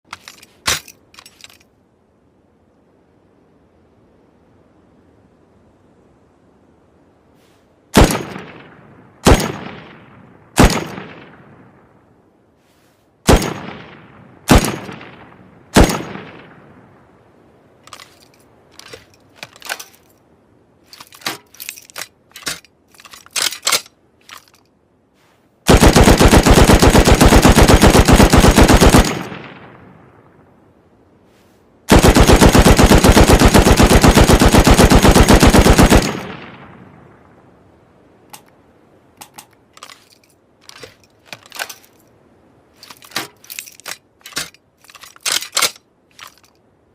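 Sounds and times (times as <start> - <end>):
machine gun shots echoing: 10.6 - 11.4, 13.3 - 16.5, 25.7 - 29.8, 31.9 - 36.8
full-auto gunfire bursts: 13.3 - 15.2, 25.7 - 29.6, 31.9 - 36.6.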